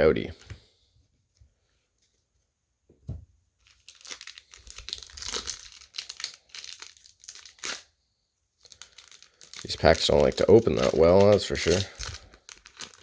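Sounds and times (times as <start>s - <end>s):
foil wrapper crinkling and tearing: 3.6s - 8.0s, 8.6s - 13.0s.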